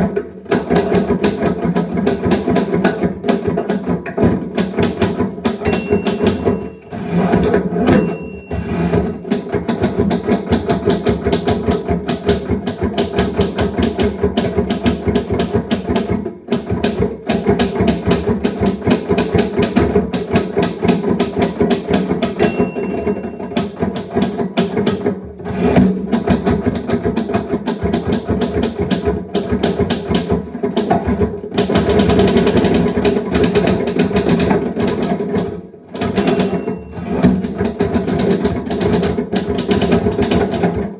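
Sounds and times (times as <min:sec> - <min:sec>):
typewriter margin bell: 0:05.6 - 0:09.4, 0:22.4 - 0:24.2, 0:36.0 - 0:37.7
typewriter keys clacking: 0:36.0 - 0:37.3.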